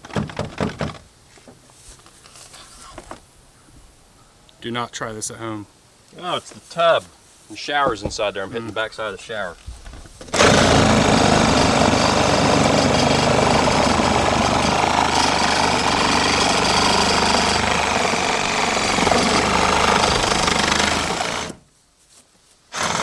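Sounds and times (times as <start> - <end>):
reciprocating saw cutting: 10.3 - 21.6, 22.7 - 23.0.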